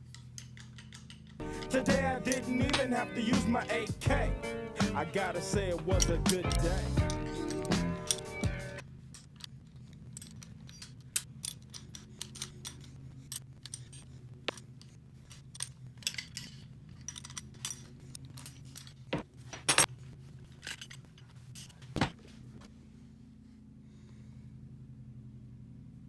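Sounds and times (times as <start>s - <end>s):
metal hand tools clinking: 0.0s - 21.9s
steady low hum: 1.4s - 15.9s.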